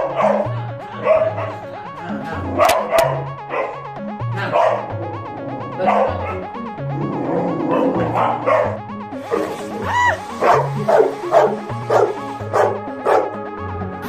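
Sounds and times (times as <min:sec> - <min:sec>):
dog barking and yipping: 0:00.0 - 0:01.6, 0:02.6 - 0:03.9, 0:04.5 - 0:05.0, 0:05.6 - 0:06.5, 0:07.7 - 0:13.4
background music with bassline: 0:00.0 - 0:14.0.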